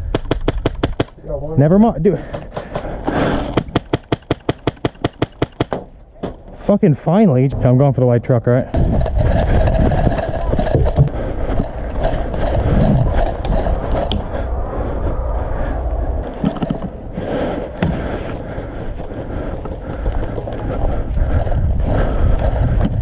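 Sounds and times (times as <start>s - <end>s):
sharp clicks: 0.0s - 1.2s
low rumble: 8.6s - 23.0s
clothing and gear rattling: 8.8s - 14.2s, 17.8s - 23.0s
footsteps: 15.7s - 23.0s.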